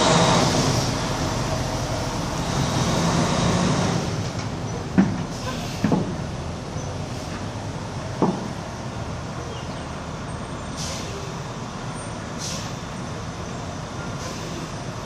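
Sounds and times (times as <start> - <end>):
diesel truck engine rumbling: 0.0 - 15.0
air brake hisses: 5.4 - 5.9, 10.8 - 11.4, 12.4 - 12.8, 14.2 - 14.8.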